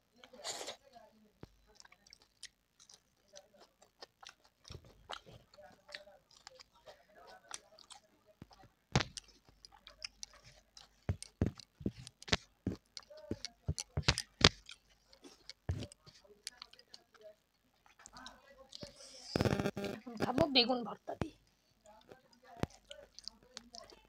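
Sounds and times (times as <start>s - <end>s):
wet chewing: 0.2s - 20.6s, 21.2s - 24.0s
lip and tongue smacks: 22.6s - 24.0s.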